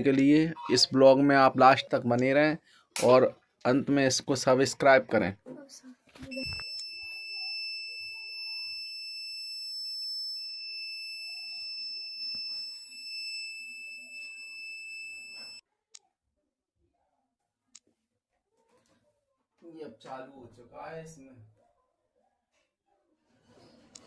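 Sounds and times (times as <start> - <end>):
high-pitched warning beep: 6.3 - 15.6.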